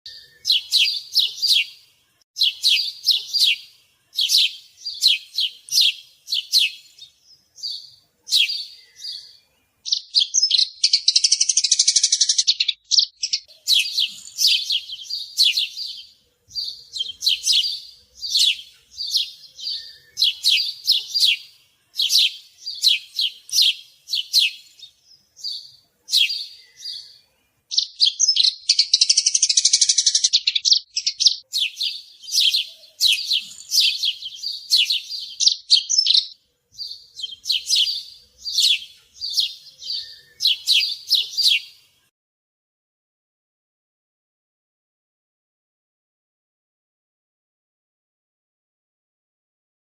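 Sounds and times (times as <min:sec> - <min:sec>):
songbird chirping and trilling: 0:00.1 - 0:42.1.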